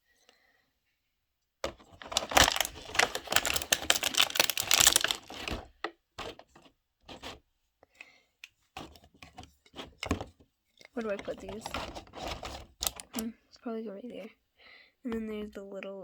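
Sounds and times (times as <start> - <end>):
plastic packaging crackling: 1.7 - 6.4, 11.0 - 13.3
plastic toy pieces clicking: 2.0 - 5.6.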